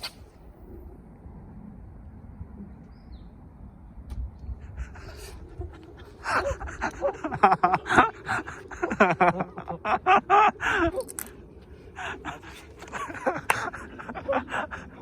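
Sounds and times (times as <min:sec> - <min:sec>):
men laughing hard: 0:04.8 - 0:11.0, 0:12.0 - 0:15.0.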